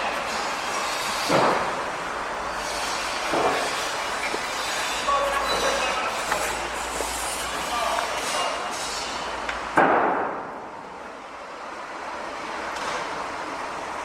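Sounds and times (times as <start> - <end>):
construction clattering din: 0.0 - 2.0, 2.7 - 7.1
metallic squeals and scrapes: 0.1 - 1.8, 2.4 - 9.3.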